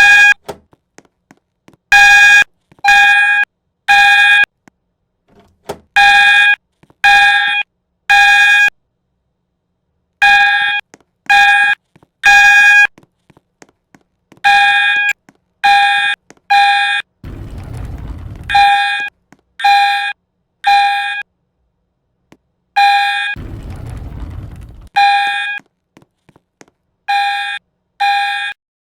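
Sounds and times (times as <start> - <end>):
fire alarm beeping: 0.0 - 0.4, 2.0 - 4.5, 6.0 - 8.7, 10.2 - 12.9, 14.4 - 21.2, 22.8 - 25.6.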